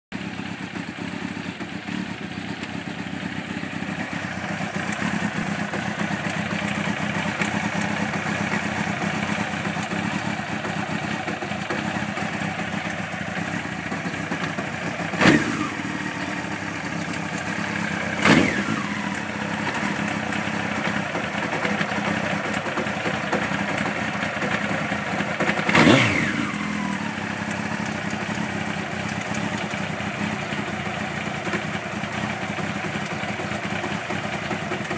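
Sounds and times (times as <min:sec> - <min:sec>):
motorcycle engine idling: 0:00.1 - 0:34.9.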